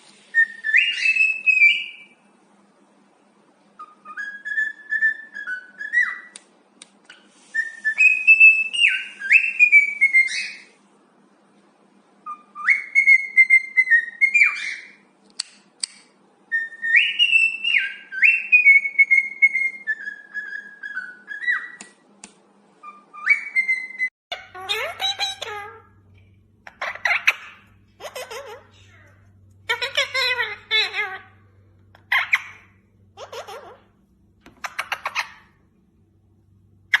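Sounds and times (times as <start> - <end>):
parrot whistling a tune: 0.3 - 2.2, 3.8 - 6.4, 7.5 - 10.7, 12.2 - 15.0, 16.5 - 21.8, 22.8 - 25.8.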